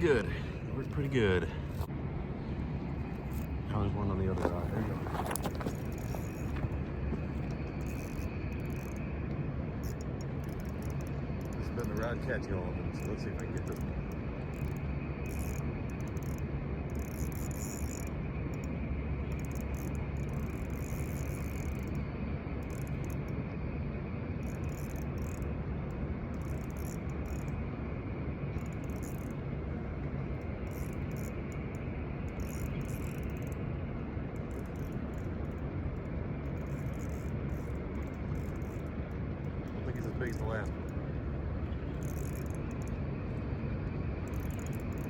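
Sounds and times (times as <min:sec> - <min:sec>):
faint hum: 0:00.0 - 0:45.0
low outdoor rumble: 0:00.0 - 0:45.0
rustling: 0:04.4 - 0:06.7
faint high ticks: 0:07.4 - 0:12.2.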